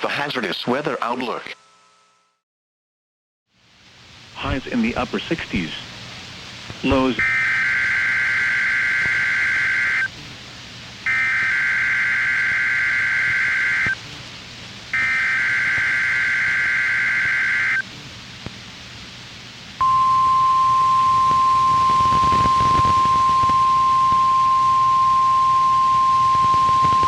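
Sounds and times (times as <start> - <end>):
steady warning alarm tone: 7.2 - 10.1, 11.1 - 14.0, 14.9 - 17.8, 19.8 - 27.0
warbling digital data tones: 19.8 - 27.0.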